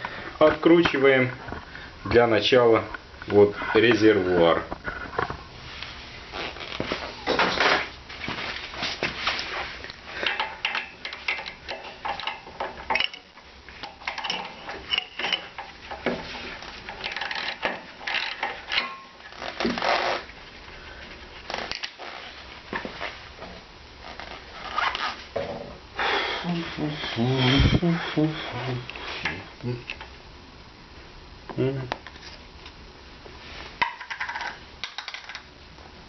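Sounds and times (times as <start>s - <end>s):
metal parts scraping: 10.2s - 15.6s, 16.3s - 20.2s
metal tools clicking and clinking: 10.2s - 16.0s.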